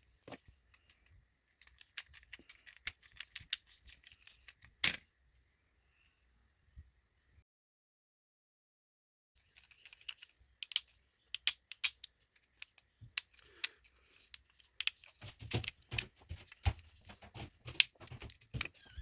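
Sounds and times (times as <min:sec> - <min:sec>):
small parts and tools clicking: 0:00.2 - 0:05.0, 0:09.4 - 0:16.0.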